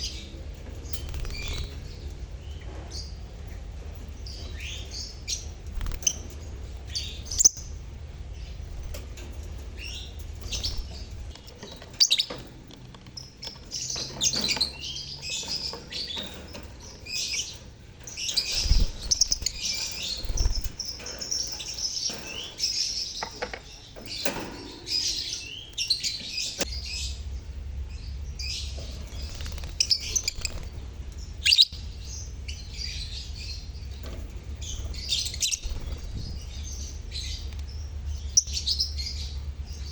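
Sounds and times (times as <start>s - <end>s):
low hum: 0.0s - 23.1s, 24.9s - 39.9s
lovebirds chattering and chirping: 0.0s - 39.9s.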